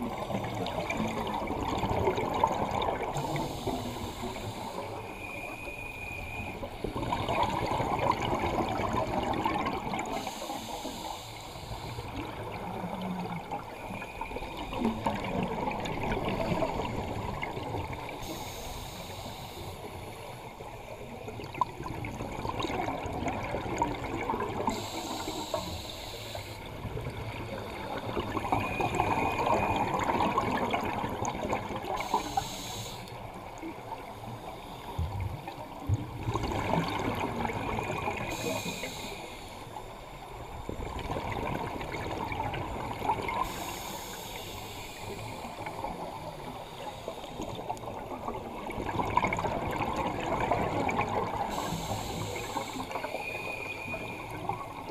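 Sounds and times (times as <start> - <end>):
regulator inhale hiss: 3.2 - 6.6, 10.0 - 12.4, 18.1 - 20.6, 24.6 - 26.7, 31.8 - 35.2, 38.2 - 40.5, 43.2 - 47.9, 51.4 - 54.6
gurgling exhaust bubbles: 26.8 - 31.9, 35.0 - 38.4, 47.5 - 51.9.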